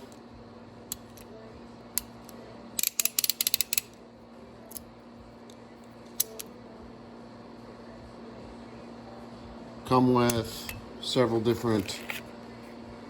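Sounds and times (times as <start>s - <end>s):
pliers clicking: 2.0s - 4.0s
pliers ratchet clicks: 2.8s - 4.0s, 6.2s - 6.5s.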